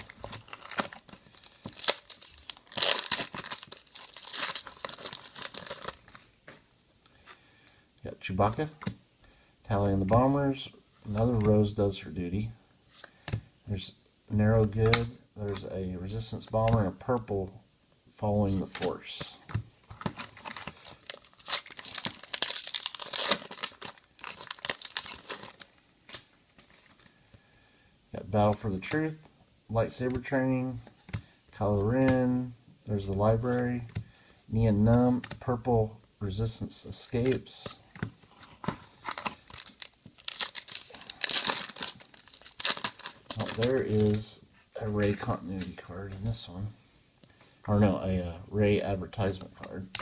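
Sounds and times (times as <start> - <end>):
foil wrapper tearing and crinkling: 0.0 - 6.3, 20.2 - 26.2, 39.0 - 44.2.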